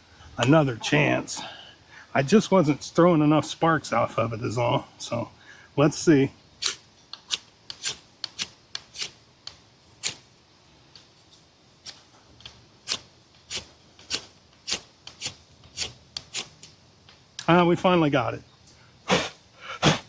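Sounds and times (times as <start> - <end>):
knife scraping ferrocerium rod: 12.9 - 16.5.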